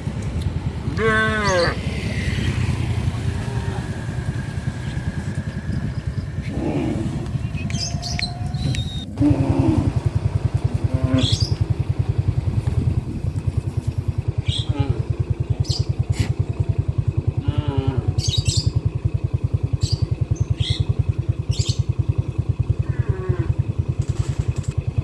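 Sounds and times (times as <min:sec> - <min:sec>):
small motorcycle engine running: 0:00.0 - 0:25.0
cow mooing: 0:00.9 - 0:01.8, 0:08.1 - 0:10.1, 0:10.7 - 0:11.6, 0:17.4 - 0:18.2, 0:22.8 - 0:23.6.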